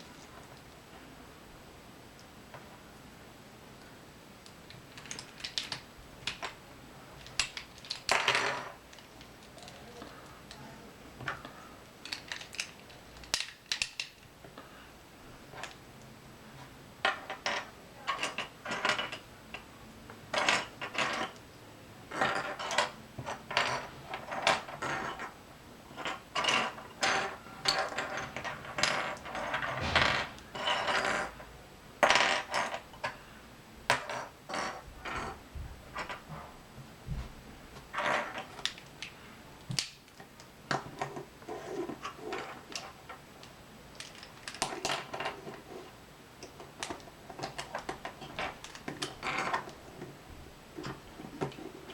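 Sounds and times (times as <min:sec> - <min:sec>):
plastic puzzle pieces clicking: 0:04.4 - 0:06.6, 0:07.2 - 0:10.6, 0:11.2 - 0:14.3, 0:38.2 - 0:41.2, 0:41.8 - 0:45.6, 0:46.4 - 0:50.1.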